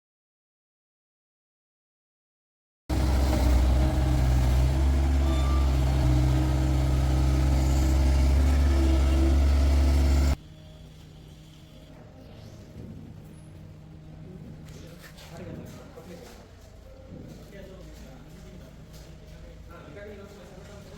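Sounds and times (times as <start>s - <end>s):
diesel engine running: 2.9s - 10.4s.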